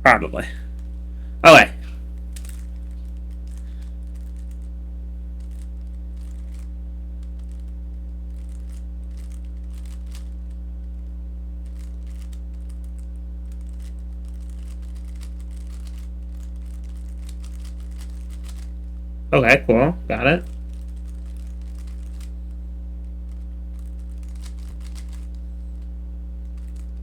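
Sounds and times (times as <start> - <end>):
low electrical hum: 0.0 - 27.0
puzzle cube plastic clicks: 2.2 - 4.7, 5.4 - 7.7, 8.3 - 10.4, 11.6 - 18.8, 20.4 - 22.4, 23.3 - 25.8, 26.4 - 27.0.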